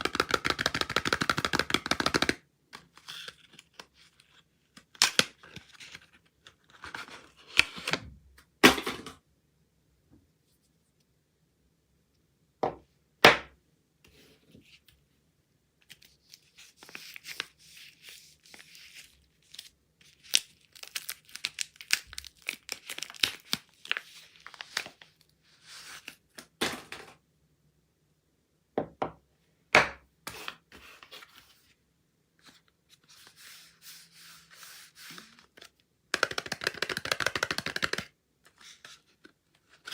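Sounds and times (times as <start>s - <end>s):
wrappers rustling and tearing: 19.0s - 25.0s.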